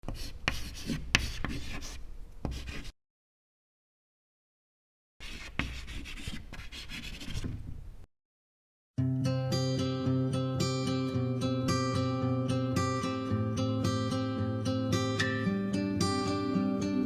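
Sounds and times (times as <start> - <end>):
scratchy rubbing and scraping: 0.0 - 2.9, 5.2 - 7.6.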